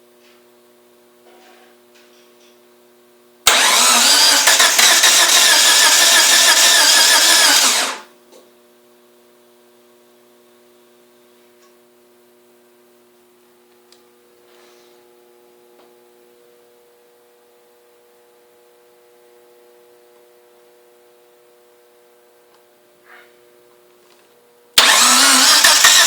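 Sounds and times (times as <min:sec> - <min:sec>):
starter cranking engine: 0:03.5 - 0:08.1, 0:24.8 - 0:26.0.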